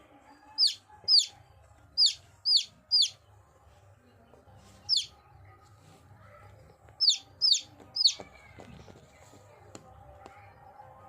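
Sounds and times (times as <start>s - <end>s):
chicks peeping: 0.5s - 1.4s, 2.0s - 3.2s, 4.9s - 5.1s, 7.0s - 8.3s.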